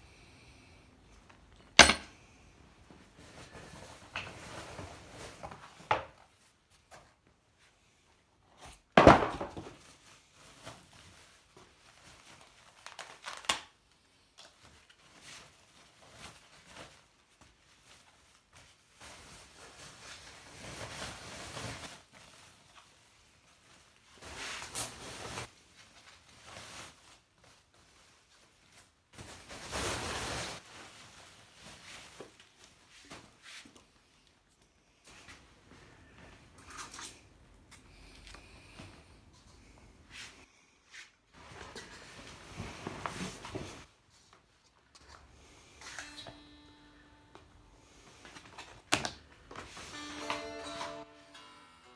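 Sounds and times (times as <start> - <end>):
wrapping crinkling and tearing: 9.8 - 32.9.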